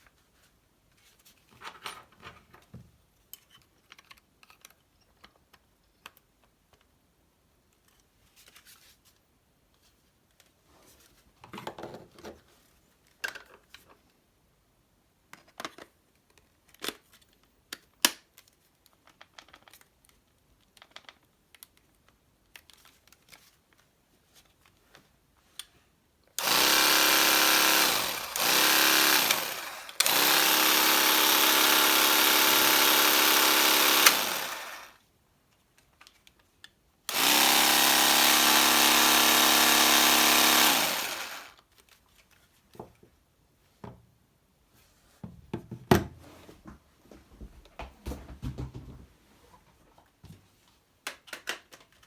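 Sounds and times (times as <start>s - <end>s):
small saw motor running: 26.4s - 35.0s, 37.1s - 41.6s.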